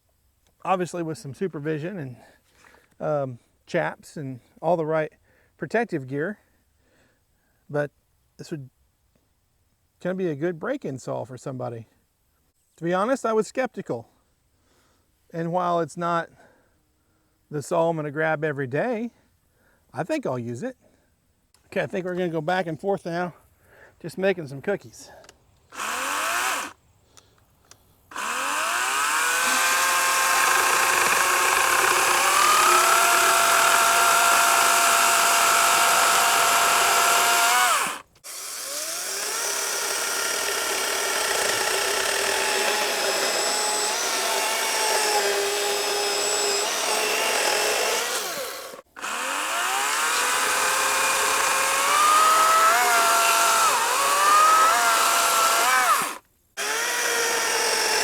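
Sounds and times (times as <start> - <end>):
electric chainsaw cutting wood: 25.7 - 26.8, 28.1 - 58.0.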